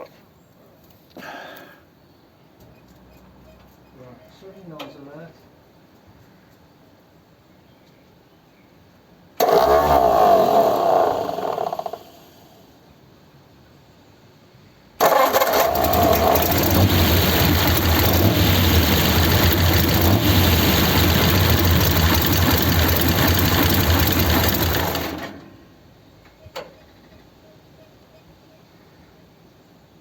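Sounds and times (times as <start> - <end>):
car engine starting and running: 9.4 - 12.4, 15.0 - 25.7.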